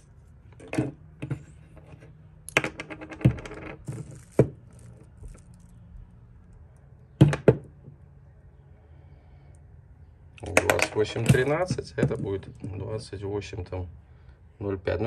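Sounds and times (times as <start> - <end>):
small parts clicking and tapping: 0.5 - 5.8.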